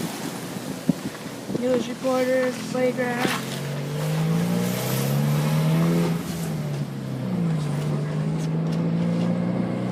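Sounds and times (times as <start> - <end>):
road or wind noise hiss: 0.0 - 7.1
vehicle engine running: 1.7 - 9.9.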